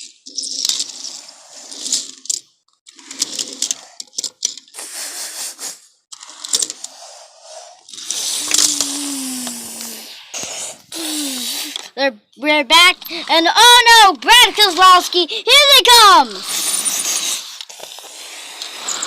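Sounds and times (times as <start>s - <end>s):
toy cars rolling and scraping: 0.0s - 19.0s
small clicks and clacks: 1.8s - 4.8s.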